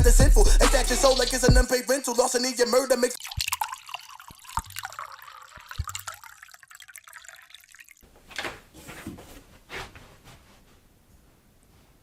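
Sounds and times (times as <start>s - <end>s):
water running and splashing: 3.2s - 8.0s.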